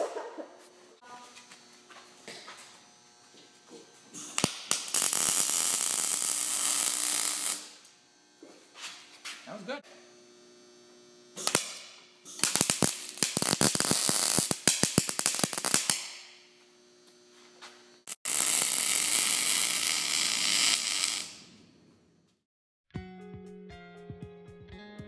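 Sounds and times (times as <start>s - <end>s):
welder steady hum: 0.0s - 22.2s
welding arc crackling and hissing: 1.1s - 21.6s.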